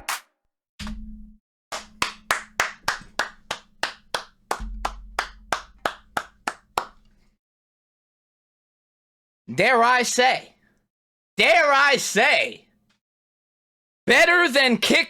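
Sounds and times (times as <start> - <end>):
person clapping hands: 0.0 - 0.2, 1.7 - 7.2.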